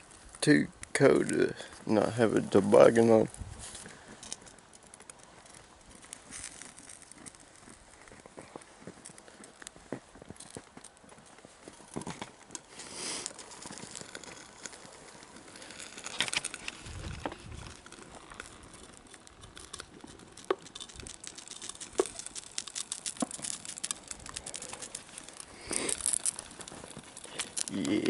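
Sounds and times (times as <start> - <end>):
fire crackling and popping: 0.0 - 28.0
rustling crunching trash: 10.6 - 28.0.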